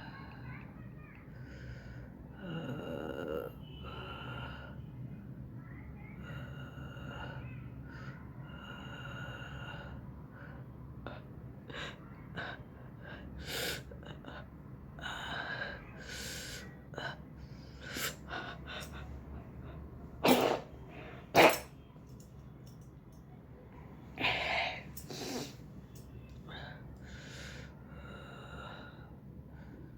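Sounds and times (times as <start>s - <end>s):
loud sneeze: 20.2s - 21.7s.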